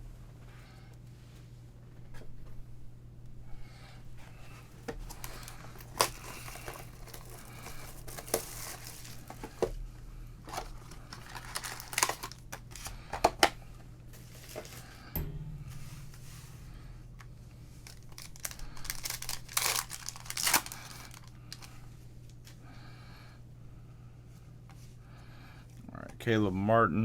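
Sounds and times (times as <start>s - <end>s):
foil wrappers tearing and crinkling: 4.5s - 9.7s, 10.4s - 13.6s, 17.8s - 22.6s.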